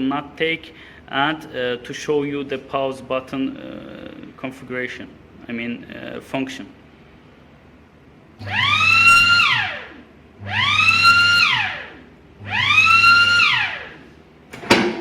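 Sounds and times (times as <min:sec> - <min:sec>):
machine alarm wailing: 0:08.4 - 0:14.1.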